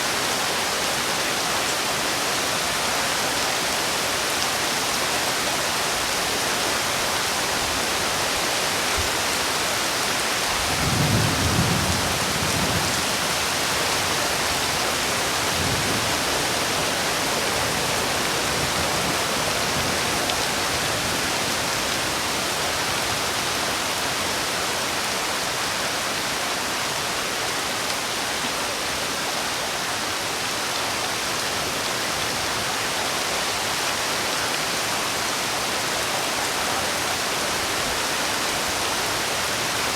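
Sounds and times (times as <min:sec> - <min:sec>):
heavy rain falling: 0:00.0 - 0:39.9
low rumble of thunder: 0:10.7 - 0:13.1.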